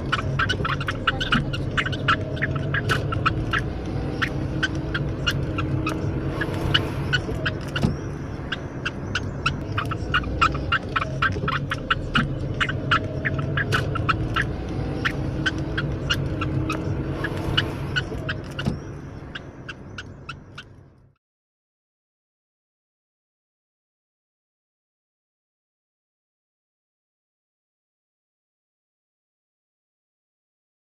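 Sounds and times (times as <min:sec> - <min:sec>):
budgerigar squeaking: 0:00.0 - 0:20.8.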